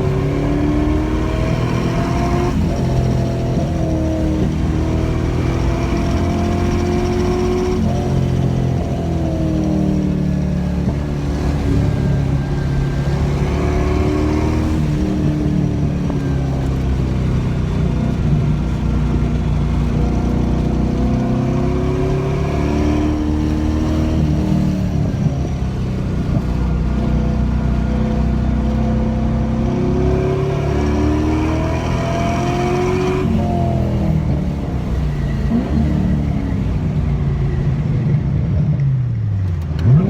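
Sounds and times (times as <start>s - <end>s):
car engine accelerating: 0.0s - 40.0s.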